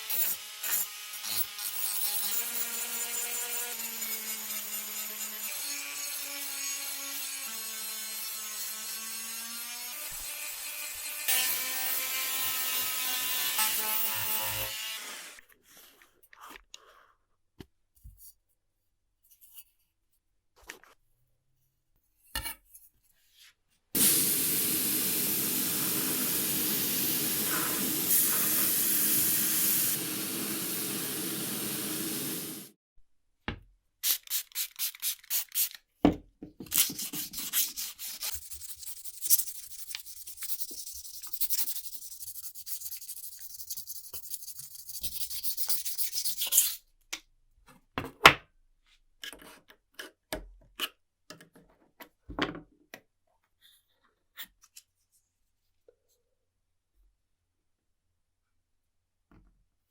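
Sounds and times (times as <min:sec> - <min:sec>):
hand sanding strokes: 0:24.0 - 0:32.6, 0:36.9 - 0:46.6
power tool humming: 0:24.0 - 0:32.7.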